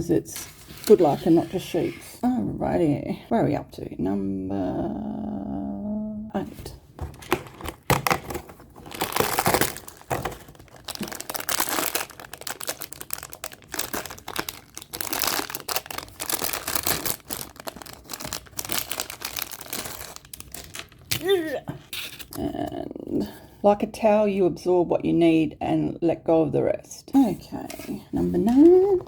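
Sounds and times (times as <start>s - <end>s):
packaging crinkling: 7.1s - 22.4s.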